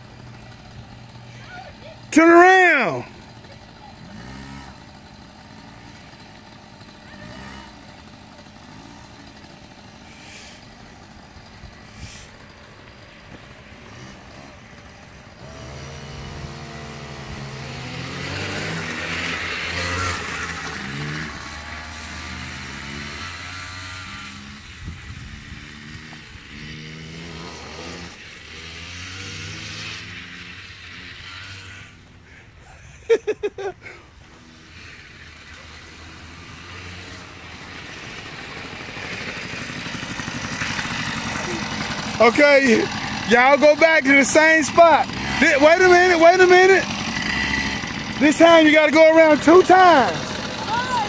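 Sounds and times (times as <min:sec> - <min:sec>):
dirt bikes revving: 0:00.0 - 0:51.0.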